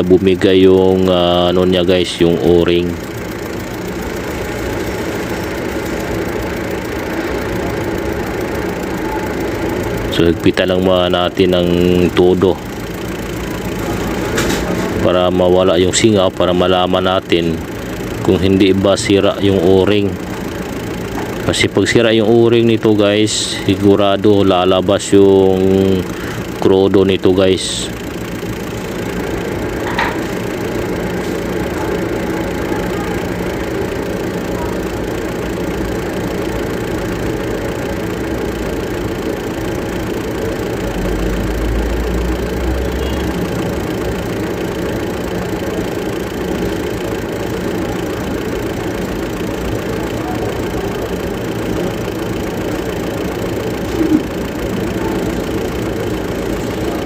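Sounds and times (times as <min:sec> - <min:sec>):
diesel truck engine idling: 0:00.0 - 0:57.0.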